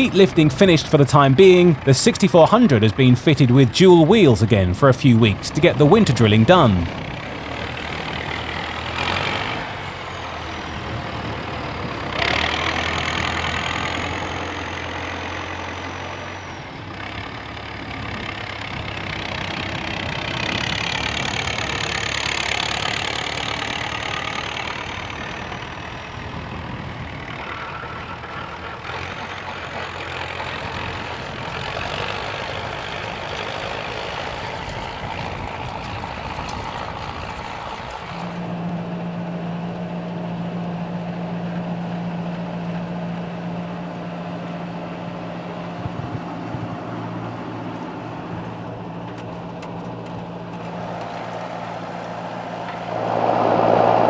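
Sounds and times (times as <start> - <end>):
tractor engine working: 0.0 - 54.0
faint high whine: 51.0 - 54.0.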